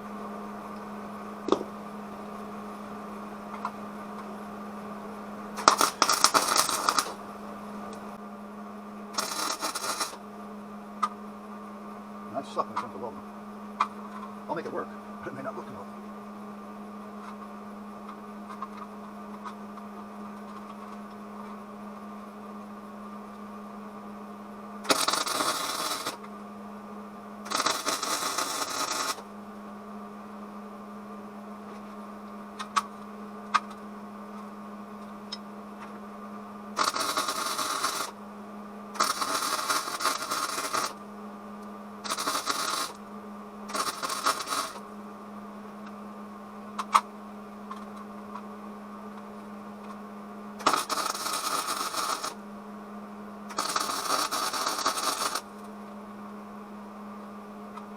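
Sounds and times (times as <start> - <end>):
steady electrical hum: 0.0 - 57.9
welder arc crackling: 5.6 - 7.3, 9.1 - 10.2, 24.8 - 26.2, 27.4 - 29.3, 36.8 - 38.2, 39.0 - 41.0, 42.0 - 43.1, 43.7 - 44.9, 50.6 - 52.4, 53.5 - 55.7.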